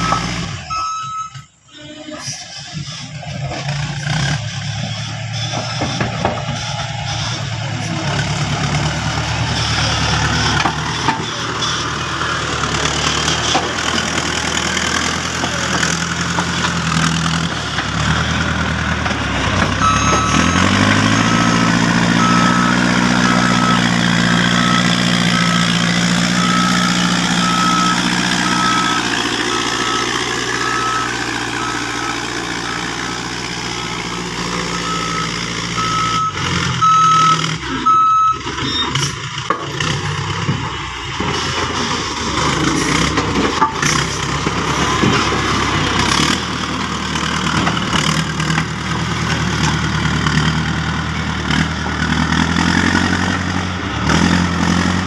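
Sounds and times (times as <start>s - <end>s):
reversing alarm beeping: 0.0s - 3.4s, 4.4s - 12.1s, 19.8s - 39.0s
diesel engine revving: 0.0s - 55.0s.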